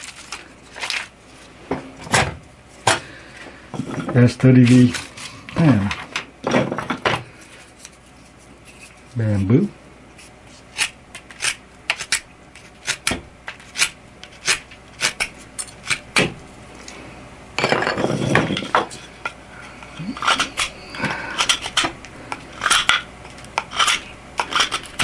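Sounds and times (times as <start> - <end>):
knife whittling bamboo: 20.0 - 21.9.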